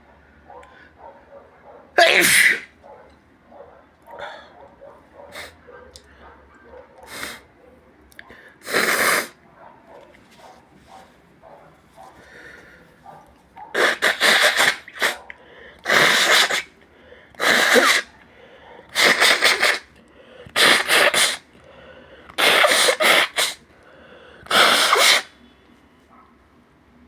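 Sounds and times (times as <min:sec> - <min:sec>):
person sneezing: 0:02.0 - 0:02.8, 0:08.6 - 0:09.4, 0:13.7 - 0:15.2, 0:15.8 - 0:16.8, 0:17.4 - 0:18.2, 0:18.9 - 0:19.9, 0:20.5 - 0:21.5, 0:22.3 - 0:23.7, 0:24.5 - 0:25.4
person breathing: 0:12.2 - 0:13.1, 0:15.4 - 0:15.9, 0:16.9 - 0:17.4, 0:18.2 - 0:18.9, 0:20.0 - 0:20.6, 0:21.6 - 0:22.4, 0:23.7 - 0:24.5.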